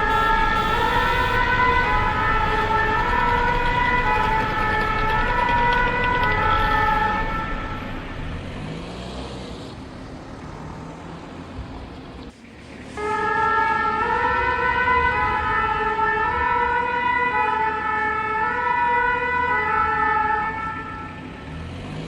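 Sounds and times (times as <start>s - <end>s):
two-tone emergency siren: 0.0s - 8.4s, 13.0s - 21.6s
low traffic rumble: 0.0s - 22.0s.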